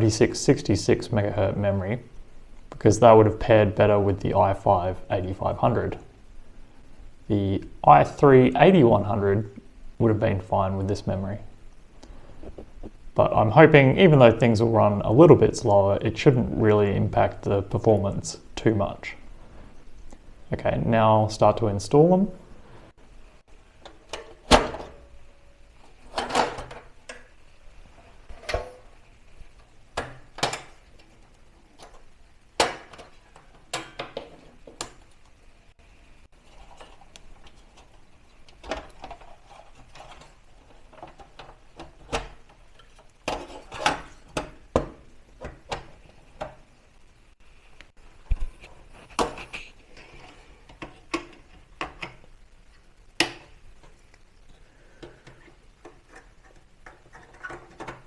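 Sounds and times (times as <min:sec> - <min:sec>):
hands working on computer case: 0:32.6 - 0:35.2.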